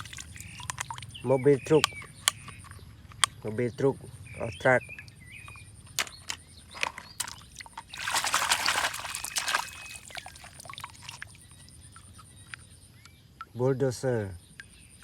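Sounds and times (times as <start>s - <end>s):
water pouring and splashing: 0.0s - 1.2s, 6.8s - 11.6s.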